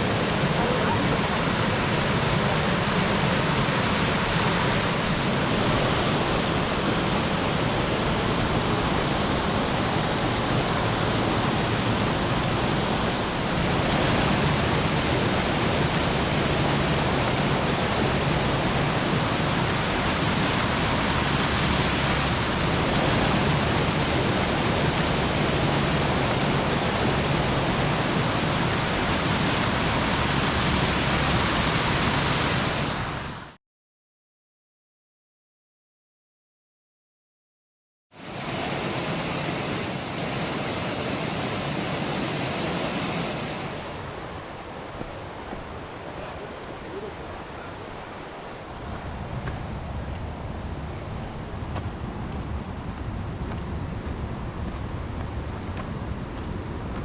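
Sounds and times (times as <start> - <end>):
waterfall rushing: 0.0 - 33.4, 38.2 - 44.7.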